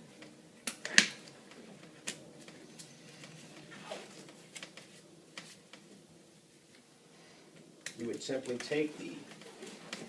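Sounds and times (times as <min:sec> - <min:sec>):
gloves snapping and clicking: 0:00.6 - 0:02.6, 0:07.8 - 0:08.7.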